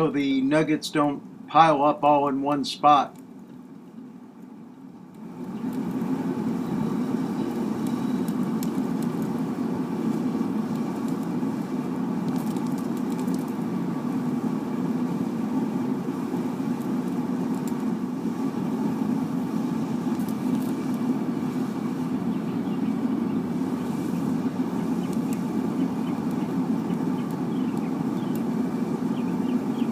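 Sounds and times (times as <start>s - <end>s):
propane burner roaring: 0.0s - 29.9s.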